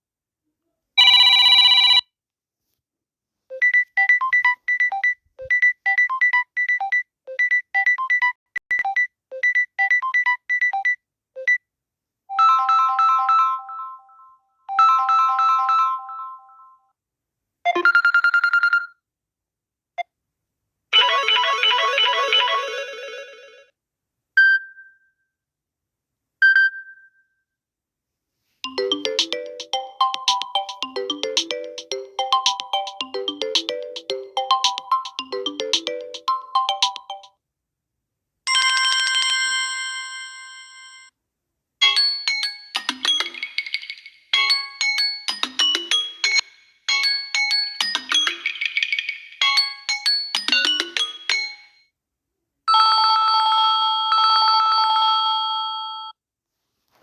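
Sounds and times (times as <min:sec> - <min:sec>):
electronic ringtone melodies: 0:12.3 - 0:16.8, 0:21.0 - 0:23.4, 0:28.7 - 0:37.3, 0:41.8 - 0:51.8.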